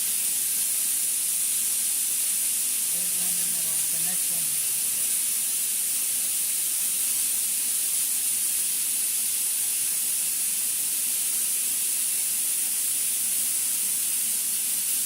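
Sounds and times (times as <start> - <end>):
cleaning machine hissing: 0.0 - 15.0.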